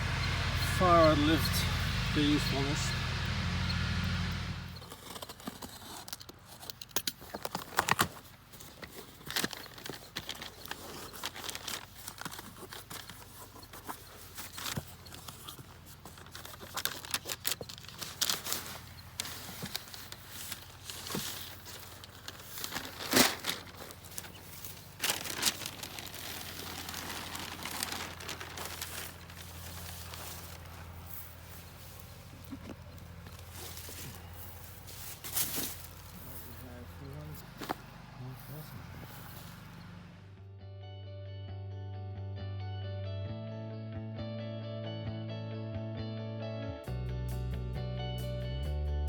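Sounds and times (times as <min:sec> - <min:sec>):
fabric rustling: 0:17.8 - 0:32.4.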